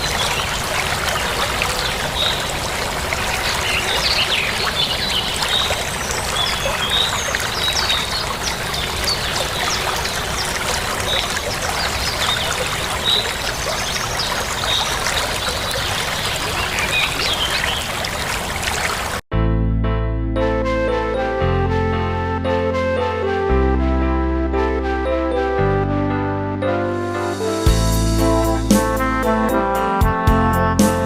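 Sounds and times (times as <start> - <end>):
small birds chirping: 0.0 - 18.6
stream water trickling: 0.0 - 19.2.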